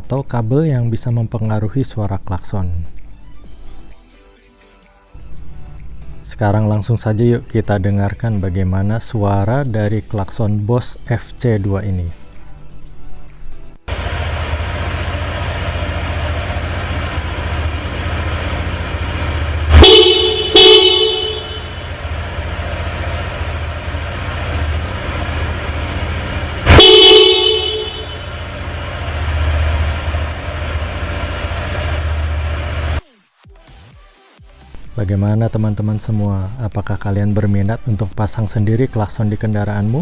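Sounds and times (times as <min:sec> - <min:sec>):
electric horn blasts: 0:13.9 - 0:33.0
motorcycle engine idling: 0:13.9 - 0:33.0.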